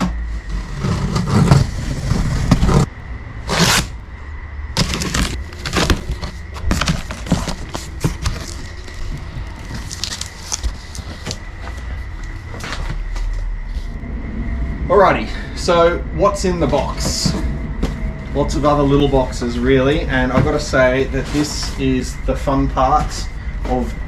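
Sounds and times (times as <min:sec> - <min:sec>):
cardboard scraping and crackling: 0:04.8 - 0:11.8.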